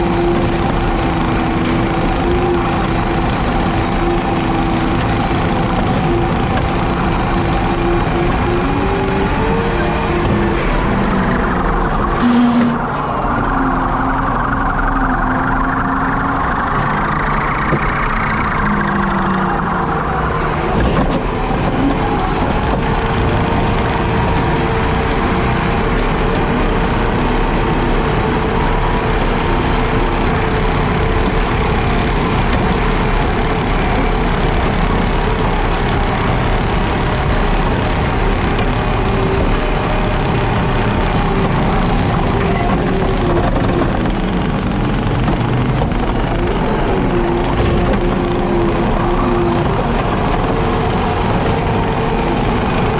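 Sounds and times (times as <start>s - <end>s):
diesel engine drone: 0.0s - 52.9s
high machine whine: 0.0s - 52.9s
mower running: 0.0s - 52.9s.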